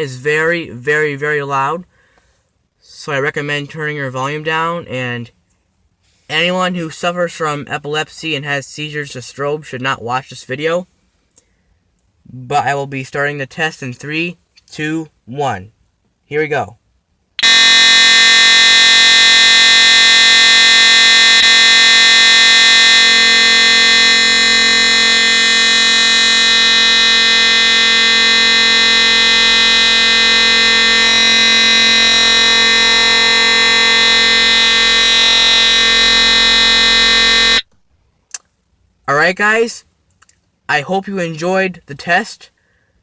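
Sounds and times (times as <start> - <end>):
fire alarm horn buzzing: 17.4 - 37.7.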